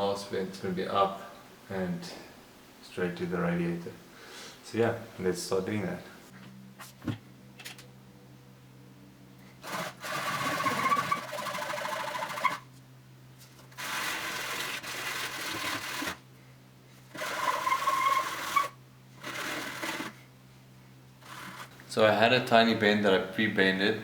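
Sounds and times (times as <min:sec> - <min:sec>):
small electric power tool running: 0:09.6 - 0:12.6, 0:13.8 - 0:16.2, 0:17.1 - 0:20.2, 0:21.2 - 0:21.8.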